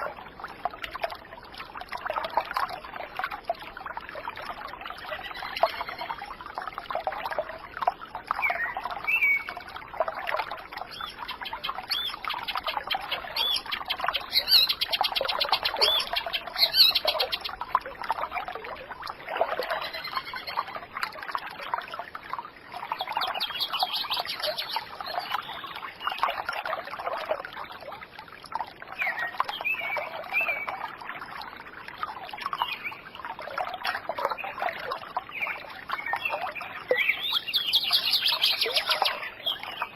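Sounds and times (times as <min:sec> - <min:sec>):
stream trickling and babbling: 0:00.0 - 0:39.9
birds chirping and trilling: 0:05.0 - 0:06.2, 0:10.9 - 0:17.6, 0:19.6 - 0:20.7, 0:22.9 - 0:26.3, 0:35.3 - 0:39.9.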